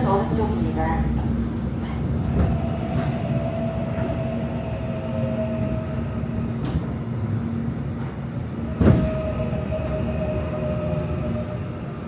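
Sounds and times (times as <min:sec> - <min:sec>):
train rumbling: 0:00.0 - 0:12.0.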